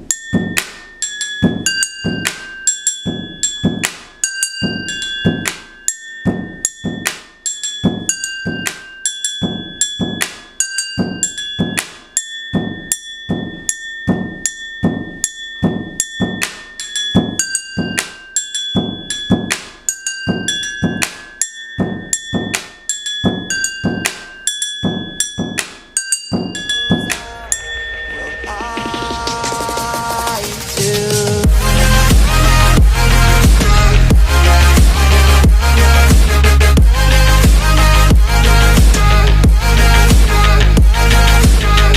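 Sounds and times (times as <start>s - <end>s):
pen striking ringing glasses: 0.0s - 28.7s
electronic music: 1.4s - 11.8s, 26.3s - 41.9s.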